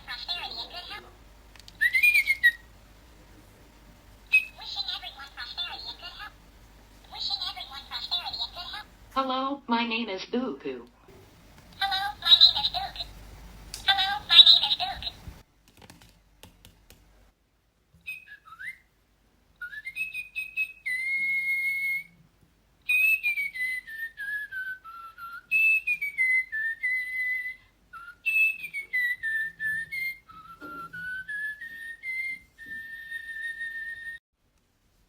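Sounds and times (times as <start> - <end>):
toy bird whistling a tune: 1.8 - 2.6, 4.3 - 6.2, 18.0 - 18.8, 19.6 - 22.2, 22.9 - 34.2.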